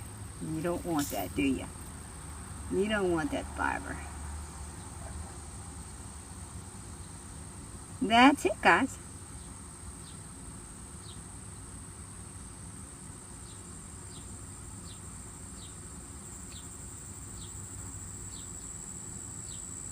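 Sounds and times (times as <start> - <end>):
high-pitched insect drone: 14.8 - 19.9.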